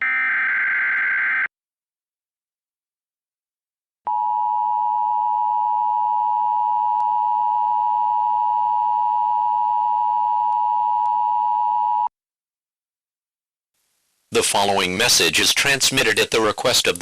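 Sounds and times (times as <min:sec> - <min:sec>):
faint static hiss: 0:13.8 - 0:17.0.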